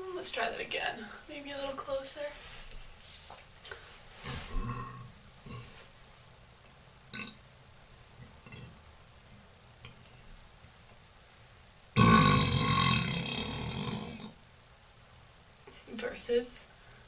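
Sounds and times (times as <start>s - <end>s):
woman burping loudly: 4.4s - 5.6s, 12.0s - 14.4s.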